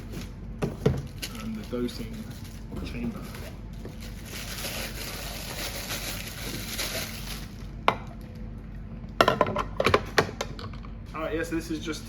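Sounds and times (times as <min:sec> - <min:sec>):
packaging rustling: 0:01.0 - 0:07.7.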